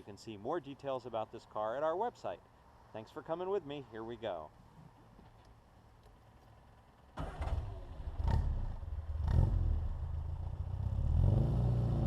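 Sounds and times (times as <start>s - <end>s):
car engine starting and running: 7.0s - 12.0s.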